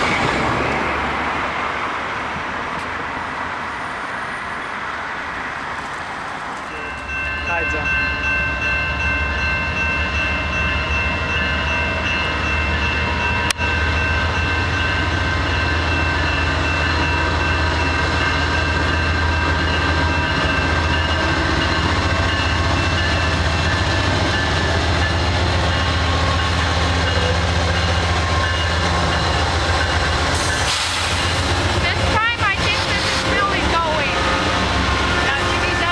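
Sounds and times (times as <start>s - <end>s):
train diesel drone: 0.0s - 35.9s
train wheels rolling: 11.4s - 35.9s.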